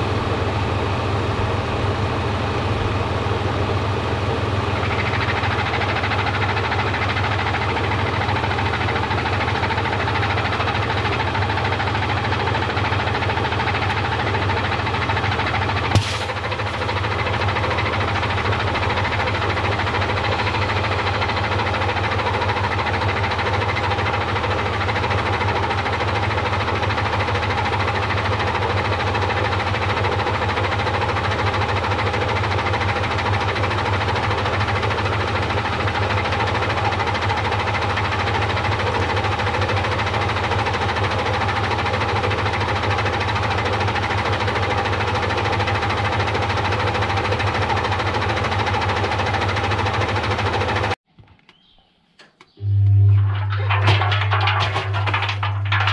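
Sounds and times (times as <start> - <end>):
washing machine humming: 0.0 - 28.4, 52.2 - 55.9.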